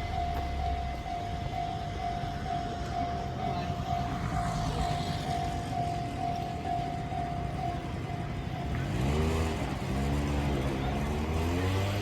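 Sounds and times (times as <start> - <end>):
level crossing warning bell: 0.0 - 12.0
vehicle engine accelerating: 7.8 - 12.0.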